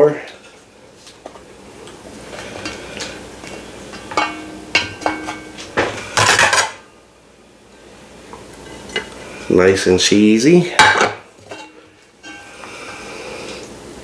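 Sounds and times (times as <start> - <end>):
utensils clinking and scraping pot: 2.3 - 6.9, 8.6 - 9.2, 10.8 - 13.6
utensil clatter: 3.9 - 6.8.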